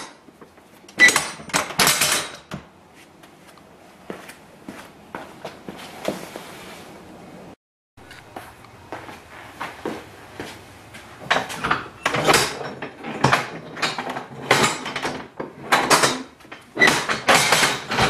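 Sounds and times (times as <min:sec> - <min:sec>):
workbench knocks and clatter: 0:01.0 - 0:02.7, 0:11.2 - 0:18.0.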